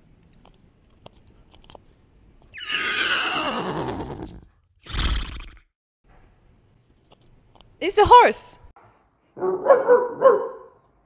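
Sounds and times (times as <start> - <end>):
man imitating horse whinny: 2.6 - 5.4.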